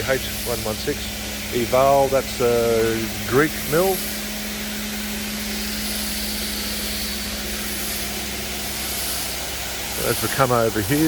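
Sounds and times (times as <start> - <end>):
cnc machine cutting metal: 0.0 - 11.0
low hum: 0.0 - 11.0.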